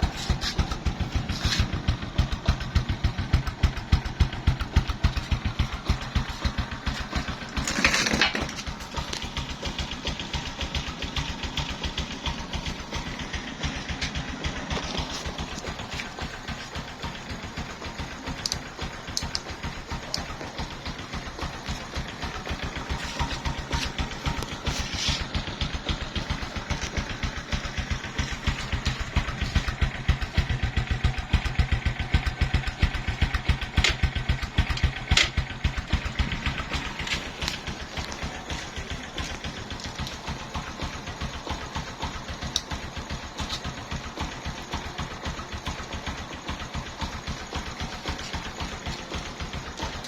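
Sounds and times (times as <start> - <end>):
small engine idling: 0.0 - 50.0.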